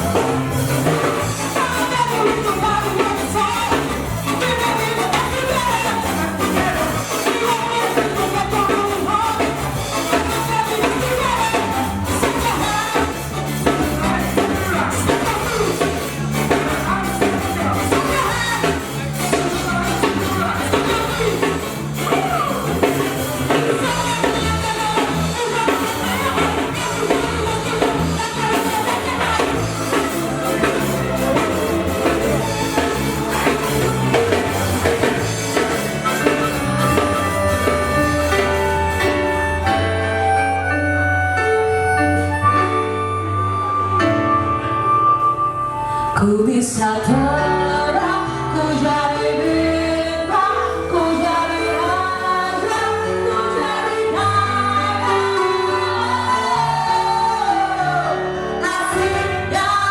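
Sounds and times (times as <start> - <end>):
drum kit: 0.0 - 45.6
bass line: 0.0 - 59.9
person singing: 0.0 - 59.9.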